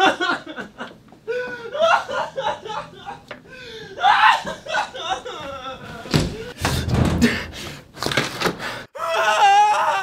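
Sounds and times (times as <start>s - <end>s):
loud thuds and crashes: 6.2s - 7.6s.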